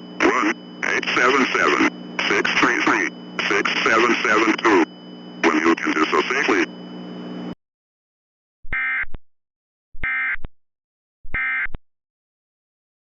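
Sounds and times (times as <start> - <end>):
buzzy digital chirps: 0.2 - 6.7.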